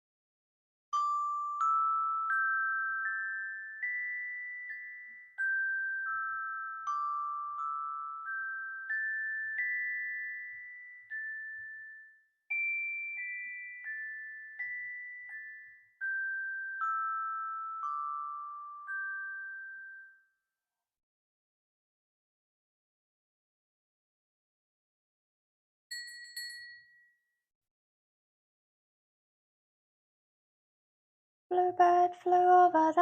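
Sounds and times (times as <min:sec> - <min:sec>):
metal percussion bars melody: 0:01.0 - 0:20.2, 0:25.9 - 0:27.0.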